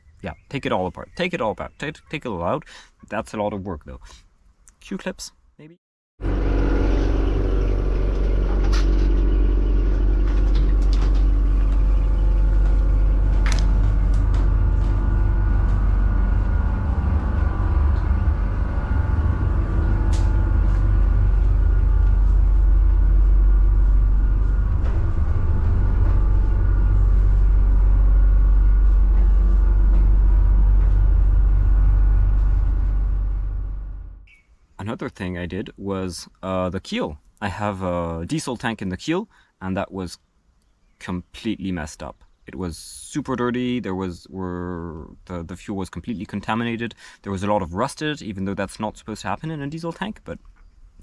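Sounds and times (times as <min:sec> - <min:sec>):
low mechanical rumble: 0:06.2 - 0:34.3.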